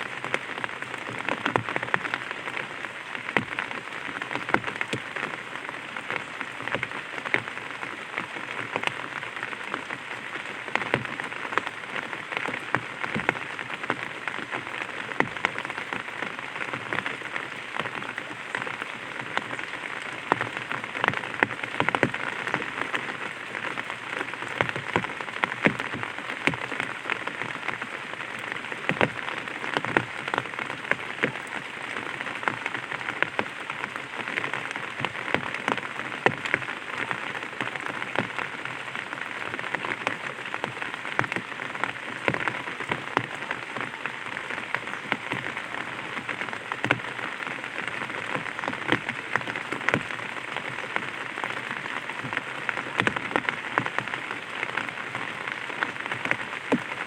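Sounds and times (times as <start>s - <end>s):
rain pattering on umbrella: 0.0s - 57.0s.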